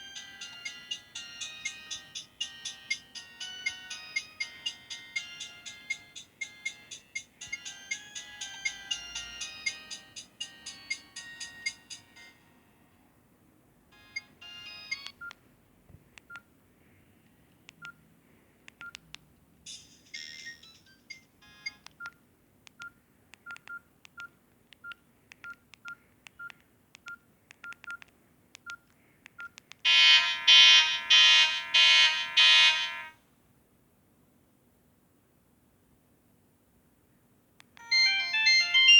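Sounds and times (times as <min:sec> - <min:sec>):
phone ringtone: 0:00.0 - 0:12.5, 0:14.0 - 0:15.3, 0:19.8 - 0:21.8, 0:29.9 - 0:33.2, 0:37.8 - 0:38.9
phone key beeps: 0:14.1 - 0:15.4, 0:18.8 - 0:19.0, 0:21.6 - 0:22.2, 0:22.8 - 0:28.8, 0:29.4 - 0:31.1.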